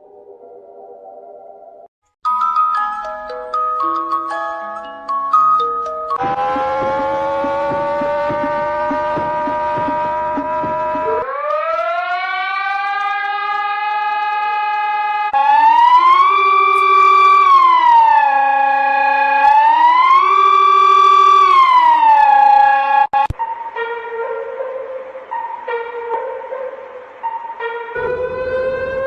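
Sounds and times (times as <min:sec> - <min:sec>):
warning siren wailing: 0:06.1 - 0:29.0
steady alarm tone: 0:06.2 - 0:13.8.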